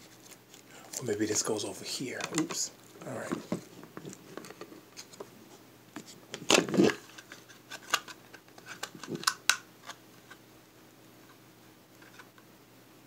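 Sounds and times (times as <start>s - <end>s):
plastic scraping rub: 6.4s - 8.0s
plastic parts clicking: 6.4s - 10.0s.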